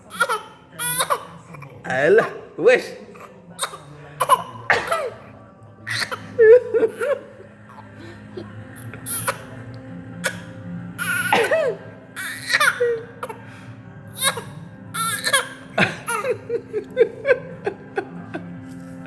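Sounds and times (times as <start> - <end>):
young child coughing: 3.2 - 5.3, 5.9 - 7.2, 10.2 - 13.4, 14.2 - 16.4.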